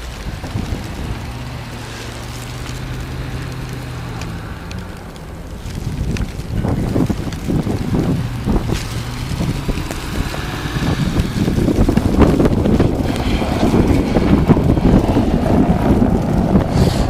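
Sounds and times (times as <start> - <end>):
blizzard wind buffeting microphone: 0.0 - 17.0.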